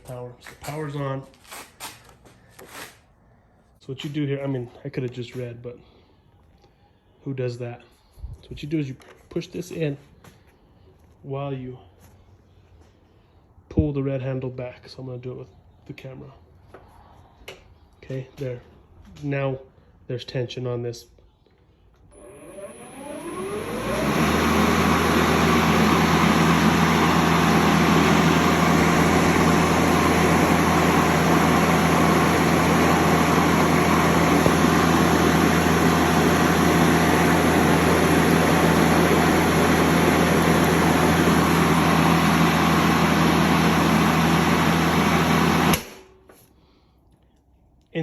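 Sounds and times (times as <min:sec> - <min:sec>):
electric lawn mower running: 0:22.1 - 0:46.0.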